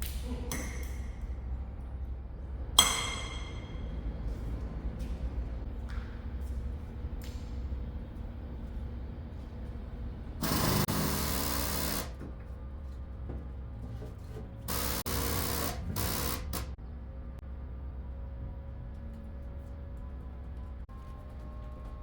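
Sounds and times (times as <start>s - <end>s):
power tool running: 10.4s - 12.2s, 14.7s - 16.8s.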